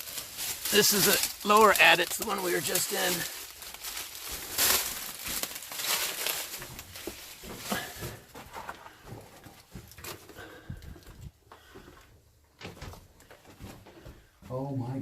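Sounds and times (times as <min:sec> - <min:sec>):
footsteps crunching on gravel: 0:00.0 - 0:10.0.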